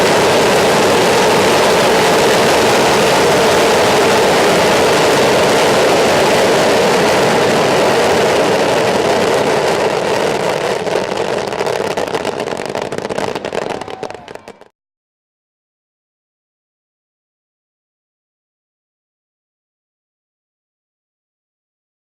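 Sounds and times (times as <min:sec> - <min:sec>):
fireworks crackling and popping: 0:00.0 - 0:14.7
fireworks rockets roaring: 0:00.0 - 0:14.7.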